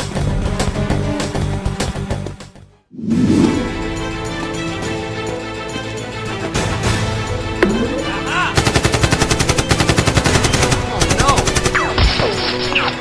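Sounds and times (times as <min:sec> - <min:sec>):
action background music: 0:00.0 - 0:13.0
automatic gunfire: 0:08.6 - 0:11.9.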